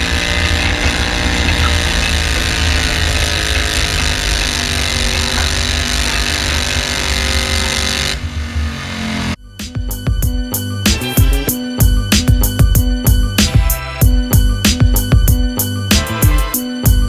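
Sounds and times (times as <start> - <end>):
tractor engine running: 0.0 - 8.2.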